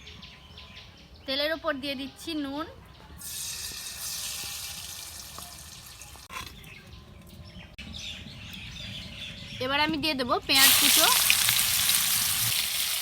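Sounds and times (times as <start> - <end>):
oil sizzling: 3.2 - 6.3, 10.6 - 13.0.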